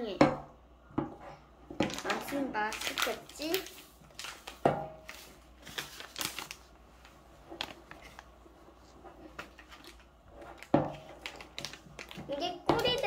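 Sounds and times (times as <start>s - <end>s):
utensil stirring dough in bowl: 0.0s - 5.7s, 6.7s - 13.0s.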